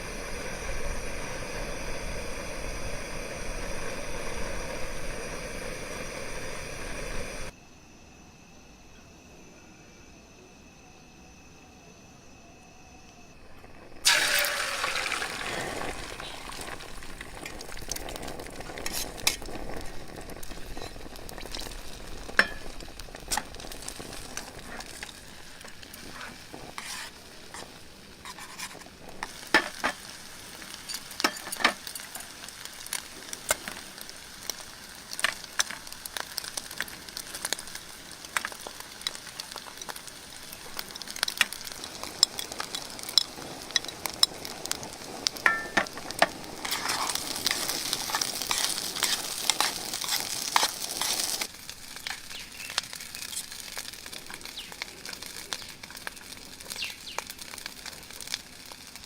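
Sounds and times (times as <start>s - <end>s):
food sizzling in hot oil: 0.0s - 7.5s, 12.8s - 59.0s
utensil stirring in a pan: 14.0s - 30.1s, 38.4s - 56.8s.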